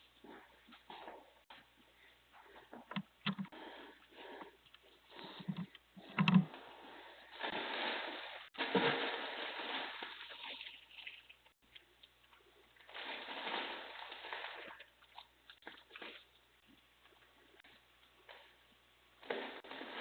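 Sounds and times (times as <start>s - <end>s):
knocks and thumps: 5.4s - 6.5s.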